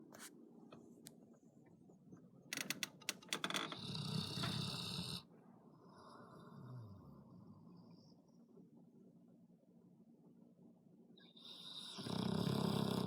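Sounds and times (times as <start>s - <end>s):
pet snoring: 3.7s - 5.2s, 11.3s - 13.0s.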